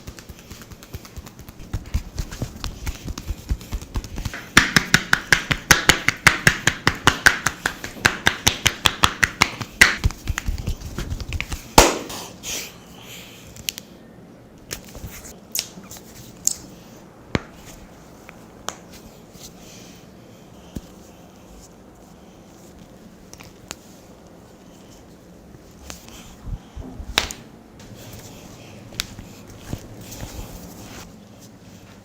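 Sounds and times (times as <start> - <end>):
hands slapping skin: 0.0 - 12.3, 27.1 - 27.4, 28.9 - 30.3.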